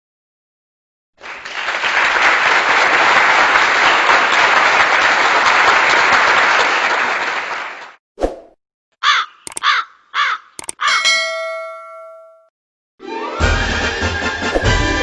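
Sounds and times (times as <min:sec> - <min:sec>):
crowd applauding: 0:01.2 - 0:08.0.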